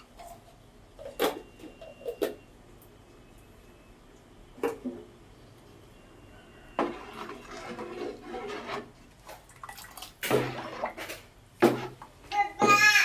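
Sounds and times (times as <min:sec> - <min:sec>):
utensil scraping and knocking a pot: 0:06.7 - 0:09.4, 0:10.3 - 0:12.1
liquid sloshing in a pot: 0:06.7 - 0:12.2.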